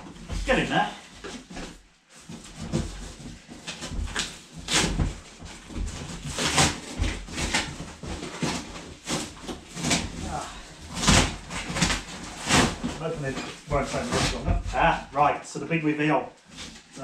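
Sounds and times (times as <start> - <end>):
cardboard scraping and rustling: 0.0 - 15.1.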